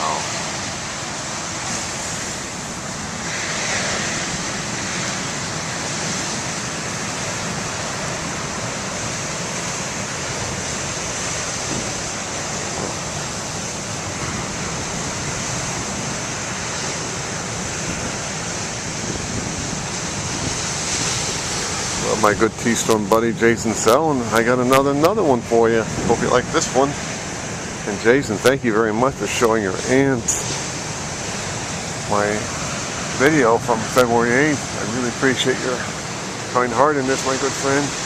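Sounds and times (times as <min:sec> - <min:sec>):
ocean waves breaking: 0:00.0 - 0:38.0
wind on microphone: 0:00.0 - 0:38.0.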